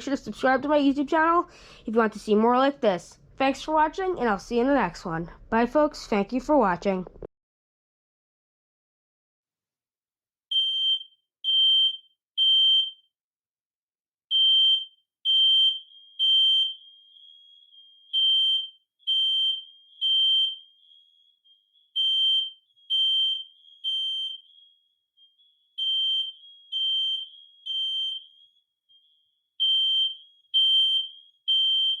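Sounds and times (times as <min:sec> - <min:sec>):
smoke alarm beeps: 0:10.5 - 0:13.1, 0:14.3 - 0:32.0.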